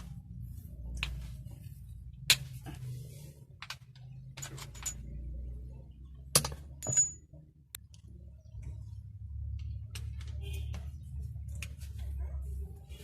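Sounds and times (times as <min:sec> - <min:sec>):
metal tools clinking: 0:04.3 - 0:05.3, 0:06.4 - 0:07.3.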